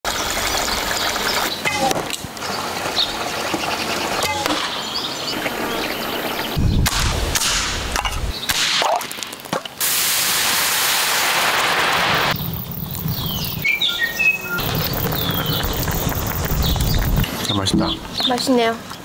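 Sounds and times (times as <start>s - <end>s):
wood fire crackling and popping: 8.5s - 9.8s, 14.6s - 17.3s
steady hiss: 9.7s - 17.4s.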